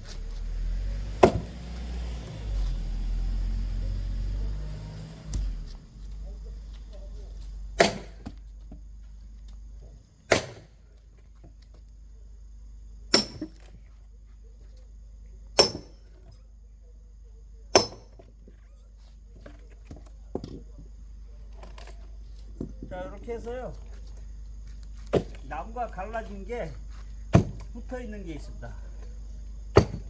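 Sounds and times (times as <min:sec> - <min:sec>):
axe chopping logs: 0:01.0 - 0:01.8, 0:07.8 - 0:08.4, 0:10.3 - 0:10.8, 0:13.1 - 0:13.7, 0:15.6 - 0:16.0, 0:17.7 - 0:18.3, 0:25.0 - 0:25.4, 0:27.3 - 0:27.7, 0:29.7 - 0:30.0.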